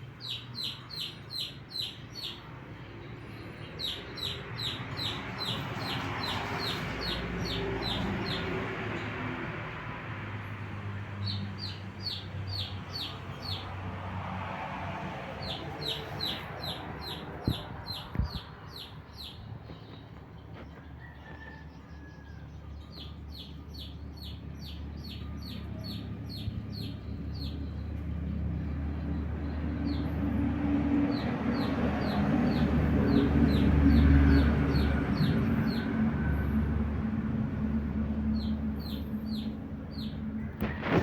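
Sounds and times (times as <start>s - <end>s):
bird chirping: 0.0s - 9.1s, 11.1s - 13.8s, 15.4s - 30.4s, 38.3s - 41.0s.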